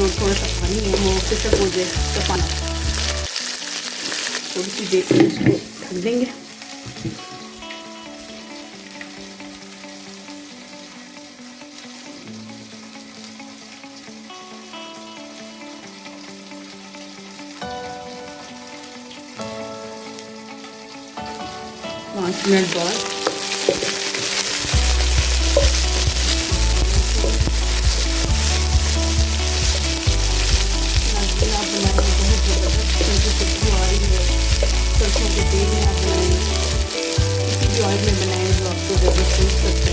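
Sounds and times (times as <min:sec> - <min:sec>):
soft tune playing: 0:00.0 - 0:03.4, 0:17.7 - 0:39.9
chicken sizzling in a pan: 0:00.0 - 0:39.9.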